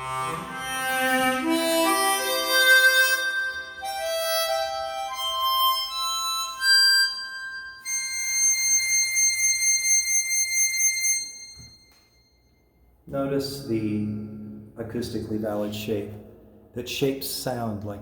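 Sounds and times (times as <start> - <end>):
harmonica playing slow melody: 0.0 - 12.5.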